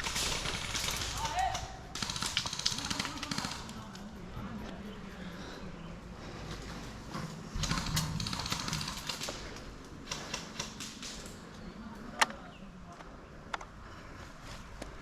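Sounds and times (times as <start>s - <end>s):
airsoft guns firing: 0.0s - 4.0s, 7.6s - 11.4s.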